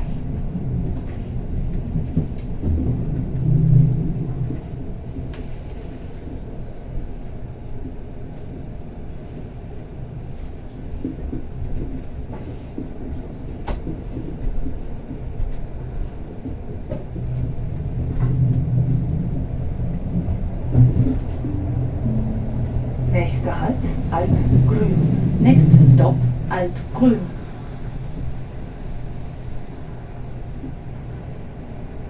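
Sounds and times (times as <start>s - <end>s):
train rumbling: 0.0s - 32.0s.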